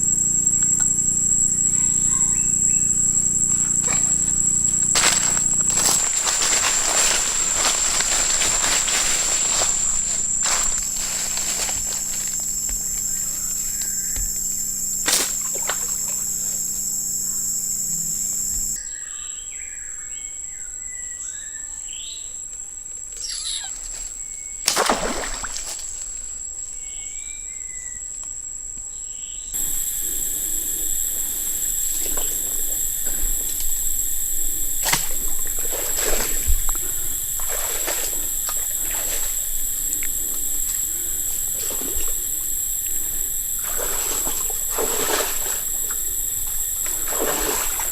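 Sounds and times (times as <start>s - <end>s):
high-pitched insect drone: 0.0s - 18.8s, 29.6s - 47.9s
short bird chirps: 23.2s - 23.8s.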